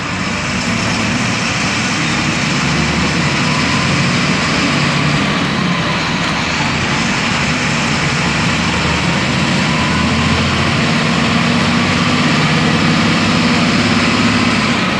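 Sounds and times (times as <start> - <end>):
bus engine droning: 0.0 - 14.9.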